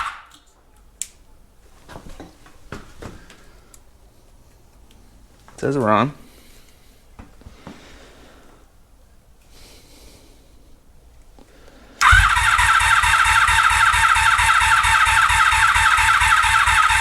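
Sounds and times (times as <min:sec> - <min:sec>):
engine cranking by starter: 0:00.0 - 0:00.4, 0:12.0 - 0:17.0.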